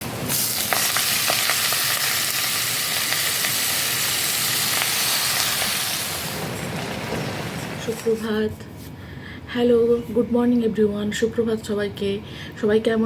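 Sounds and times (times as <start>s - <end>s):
food sizzling in hot oil: 0.0s - 8.2s.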